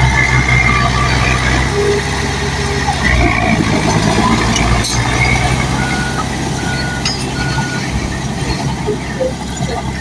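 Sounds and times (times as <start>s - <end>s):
bulldozer diesel engine running: 0.0s - 10.0s
reverse alarm beeping: 5.2s - 10.0s.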